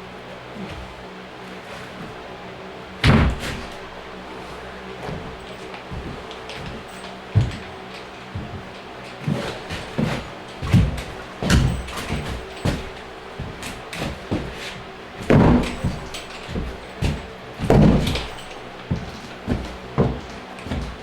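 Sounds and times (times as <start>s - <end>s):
thumps of subfloor sheet: 3.0s - 3.9s.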